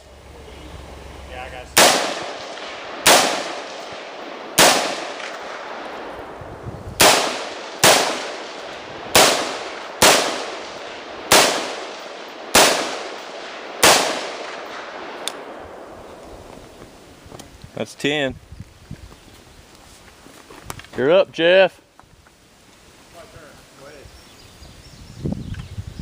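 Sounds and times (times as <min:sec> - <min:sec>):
rifle gunshots echoing: 0:01.5 - 0:16.5.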